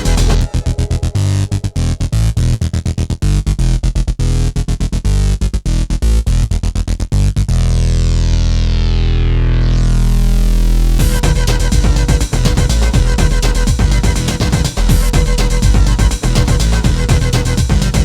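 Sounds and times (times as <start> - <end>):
electronic dance music: 0.0 - 2.3, 11.0 - 18.0.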